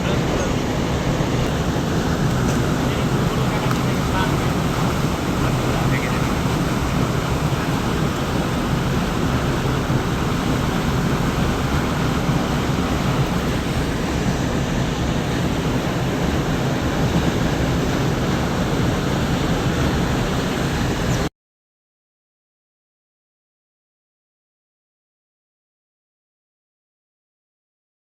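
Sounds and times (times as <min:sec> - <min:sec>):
wind buffeting microphone: 0:00.0 - 0:21.3.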